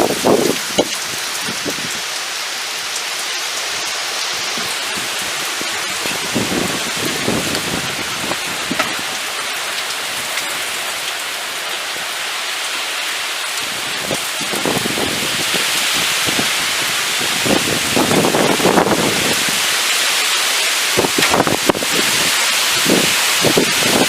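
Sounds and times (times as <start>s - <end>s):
heavy rain pouring: 0.0s - 24.0s
thunder rumbling: 4.5s - 9.3s.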